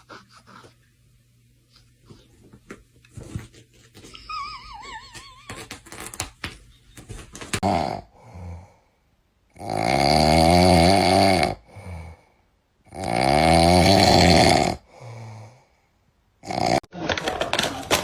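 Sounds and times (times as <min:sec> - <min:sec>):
pet snoring loudly: 0:07.6 - 0:08.7, 0:09.5 - 0:12.2, 0:12.9 - 0:15.5, 0:16.4 - 0:16.9.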